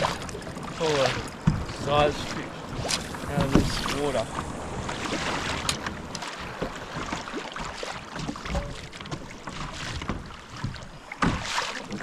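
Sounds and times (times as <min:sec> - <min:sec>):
water lapping against hull: 0:00.0 - 0:12.0
wind on microphone: 0:01.4 - 0:07.0.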